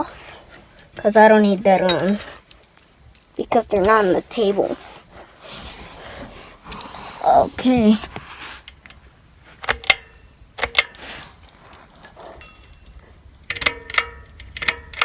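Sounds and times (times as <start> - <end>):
clicks and knocks of fan parts: 8.1 - 15.0.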